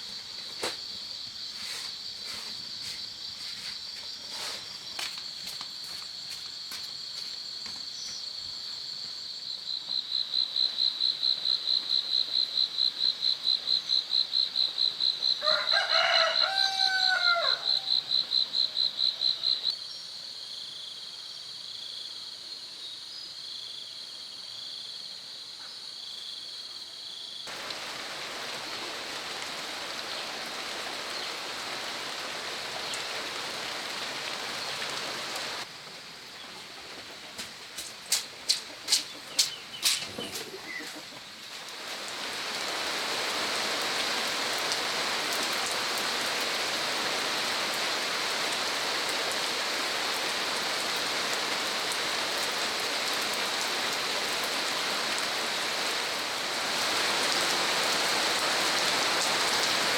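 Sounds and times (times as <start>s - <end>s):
rooster crowing: 15.3s - 18.2s.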